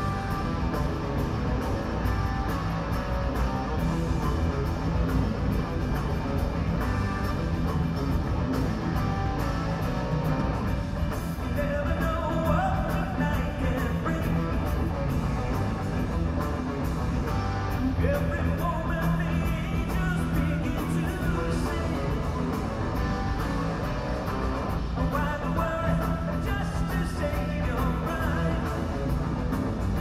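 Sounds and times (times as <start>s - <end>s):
live rock band playing: 0.0s - 30.0s.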